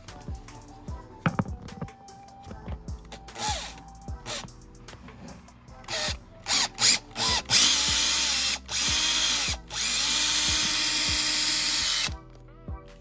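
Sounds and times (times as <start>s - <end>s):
power drill drilling: 3.3s - 4.5s, 5.9s - 12.2s.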